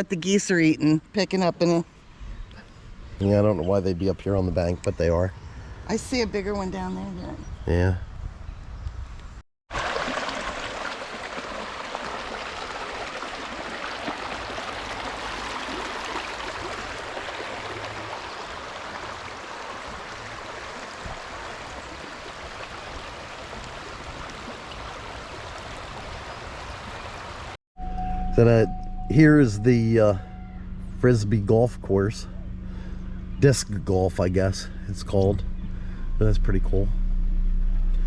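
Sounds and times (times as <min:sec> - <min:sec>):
creek water running: 0:09.7 - 0:27.6.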